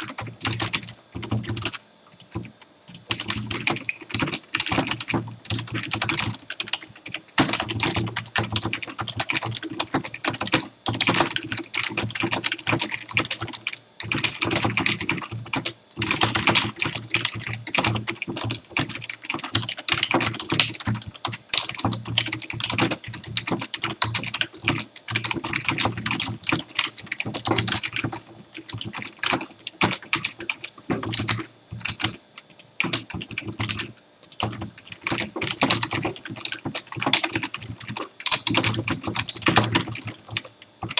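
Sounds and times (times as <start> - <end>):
fast typing on computer keyboard: 0.0 - 40.9.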